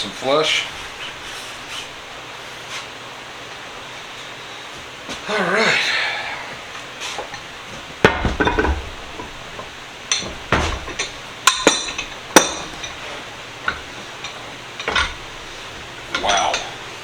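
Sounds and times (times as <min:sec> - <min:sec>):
metal tools knocking and clinking: 0:07.3 - 0:17.0.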